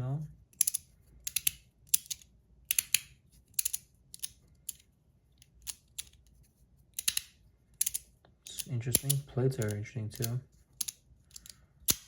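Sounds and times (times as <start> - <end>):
metal fidget toy clicking: 0.5 - 4.8, 6.9 - 12.0.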